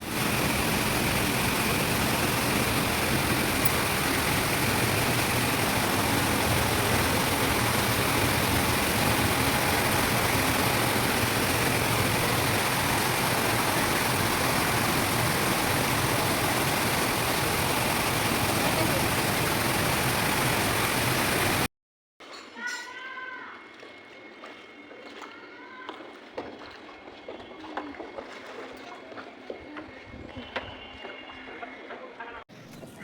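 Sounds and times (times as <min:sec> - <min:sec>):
heavy rain: 0:00.0 - 0:21.7.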